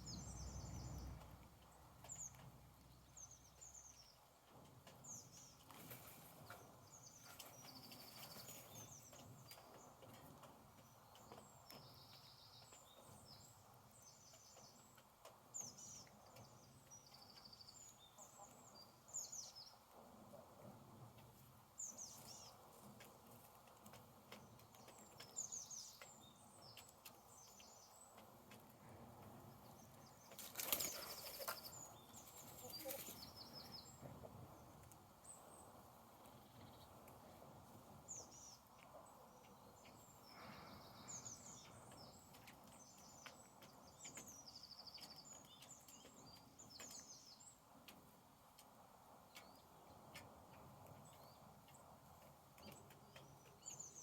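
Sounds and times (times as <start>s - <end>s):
small birds chirping: 0.0s - 54.0s
flapping wings: 30.3s - 33.3s.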